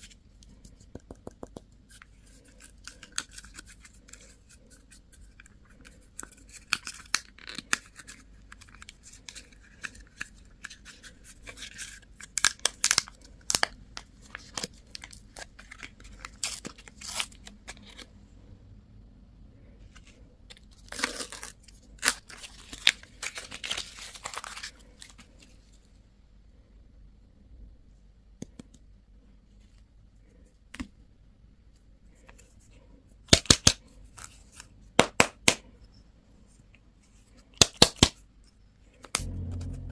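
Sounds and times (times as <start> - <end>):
candy packaging crinkling: 2.0 - 18.1, 20.0 - 25.5.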